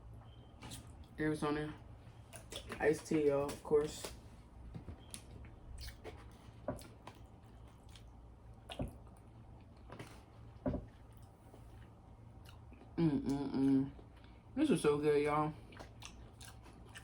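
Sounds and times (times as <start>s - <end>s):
eating and swallowing mouth sounds: 2.2s - 3.6s, 5.0s - 14.5s, 15.6s - 17.0s.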